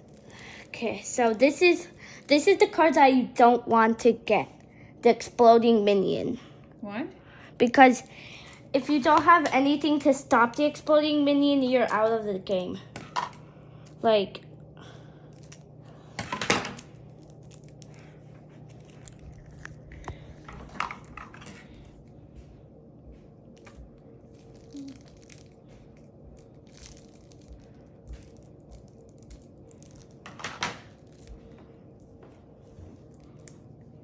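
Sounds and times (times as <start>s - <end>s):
low room hum: 0.0s - 34.0s
packaging rustling: 17.0s - 21.8s, 23.6s - 31.6s.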